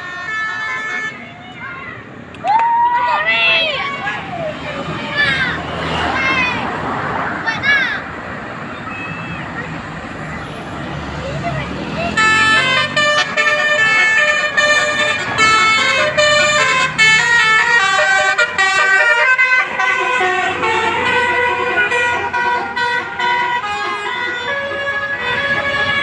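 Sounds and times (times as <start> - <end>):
musical bus horn melody: 0.0 - 1.2, 12.0 - 26.0.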